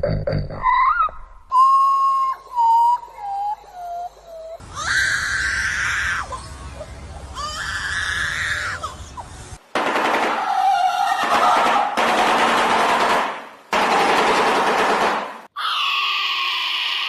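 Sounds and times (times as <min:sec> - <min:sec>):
bird screeching calls: 0:02.9 - 0:09.5, 0:15.6 - 0:17.0.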